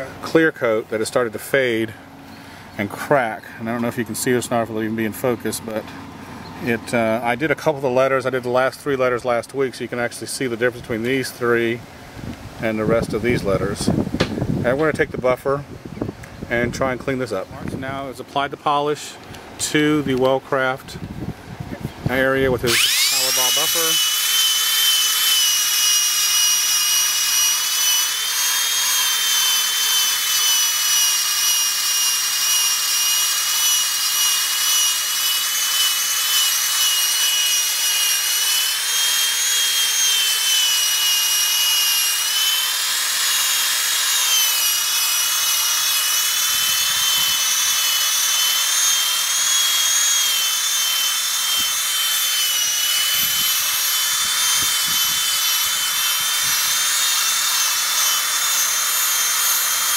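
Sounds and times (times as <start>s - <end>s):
drill motor whine: 22.4s - 59.9s.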